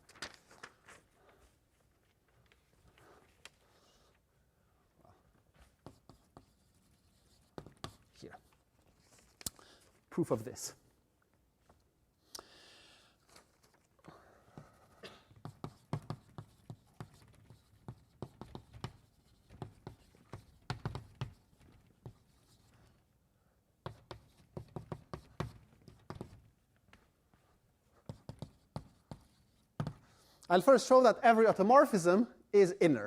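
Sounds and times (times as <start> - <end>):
scratching of writing strokes: 5.5 - 9.4, 14.4 - 23.2, 23.8 - 27.1, 27.8 - 30.3
writing on board tapping: 5.8 - 8.1, 15.4 - 22.7, 23.8 - 26.5, 28.0 - 30.0.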